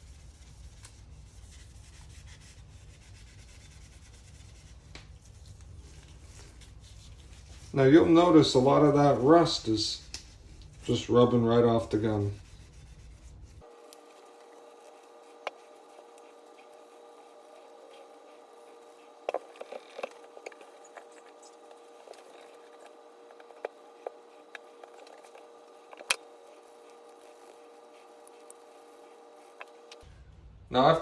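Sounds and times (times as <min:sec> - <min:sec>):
steady low hum: 0:00.0 - 0:31.0
steel wool scrubbing metal: 0:05.5 - 0:30.0.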